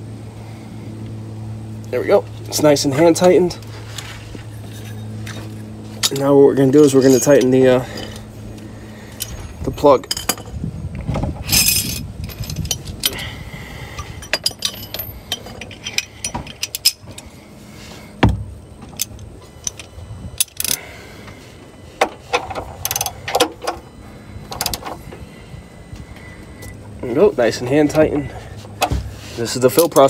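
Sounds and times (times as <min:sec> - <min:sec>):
wrench metallic clicks and scrapes: 0:14.0 - 0:17.3, 0:22.2 - 0:23.9, 0:29.4 - 0:30.0.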